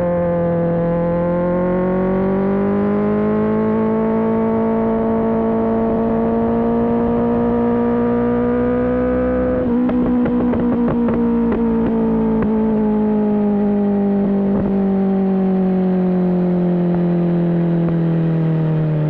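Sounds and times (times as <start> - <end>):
motorcycle engine running under load: 9.6 - 14.8.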